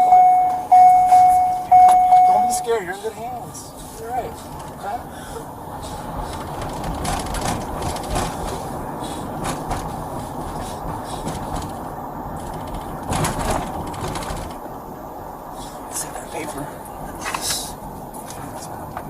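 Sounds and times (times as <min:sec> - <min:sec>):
car engine and road noise: 0:00.0 - 0:19.0
short knocks and rattles: 0:06.4 - 0:08.6, 0:12.5 - 0:14.6.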